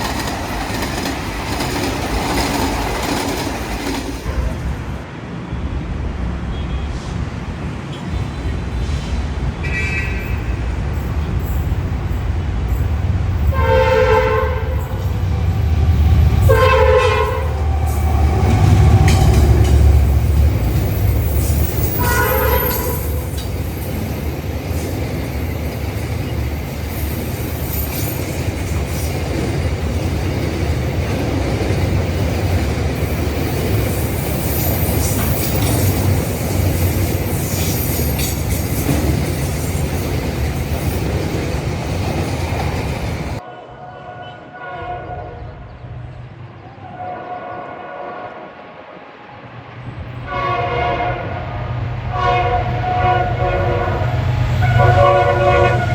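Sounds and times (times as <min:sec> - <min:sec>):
train rumbling on rails: 0:00.0 - 0:55.9
train horn blasts: 0:09.6 - 0:10.6, 0:13.5 - 0:15.3, 0:16.2 - 0:19.9, 0:21.9 - 0:23.5, 0:43.4 - 0:45.7, 0:46.7 - 0:48.6, 0:50.2 - 0:55.9.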